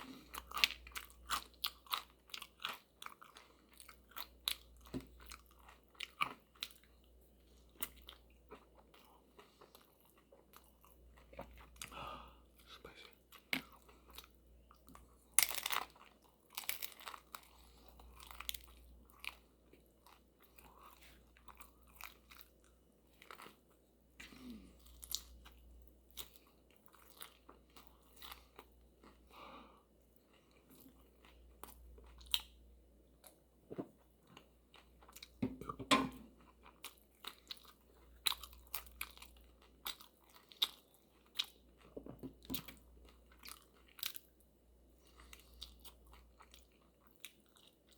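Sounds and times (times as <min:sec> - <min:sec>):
person chewing crisp food: 0:00.0 - 0:29.4, 0:30.1 - 0:32.6, 0:33.2 - 0:47.9.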